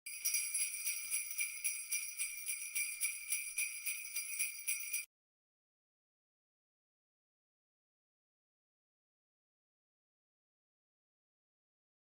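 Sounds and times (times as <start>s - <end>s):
jingle bells shaken: 0.0s - 5.1s.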